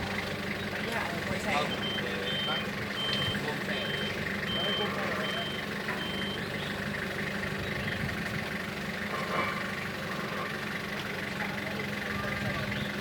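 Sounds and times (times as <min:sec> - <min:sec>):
truck engine idling: 0:00.0 - 0:13.0
reversing alarm beep: 0:01.6 - 0:06.8.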